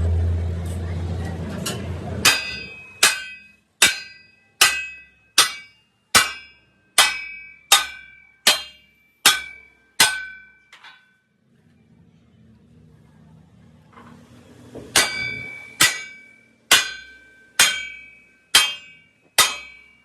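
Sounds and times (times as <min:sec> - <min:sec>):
hammer striking steel wheel rim: 0:01.6 - 0:11.1, 0:14.7 - 0:20.0.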